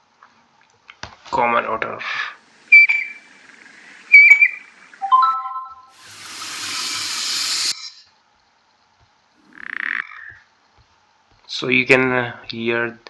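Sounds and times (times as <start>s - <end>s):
rising hiss: 2.0s - 5.2s, 5.9s - 8.0s
lower otter call: 2.4s - 8.0s, 9.4s - 10.5s
otter whistling call: 2.5s - 8.0s.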